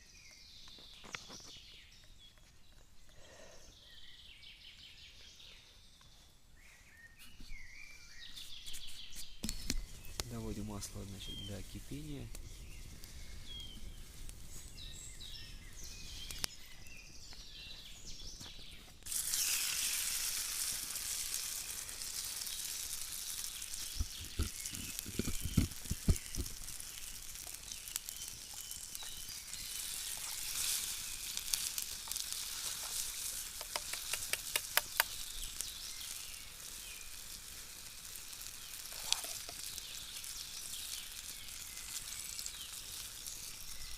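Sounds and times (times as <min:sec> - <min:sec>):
pancakes sizzling in hot oil: 0:08.8 - 0:16.5, 0:19.0 - 0:43.9.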